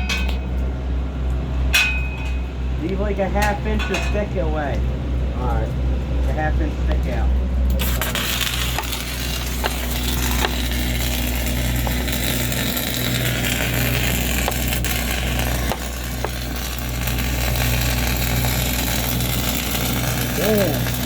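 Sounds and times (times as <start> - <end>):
welding machine low hum: 0.0 - 21.0
welding arc crackling hiss: 7.1 - 21.0
sharp welding pops: 7.7 - 21.0.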